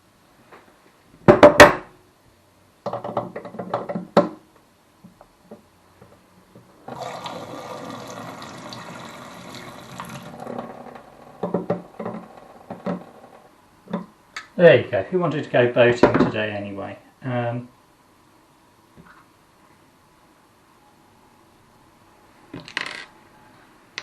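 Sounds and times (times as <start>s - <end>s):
water rushing from tap: 6.8s - 11.6s.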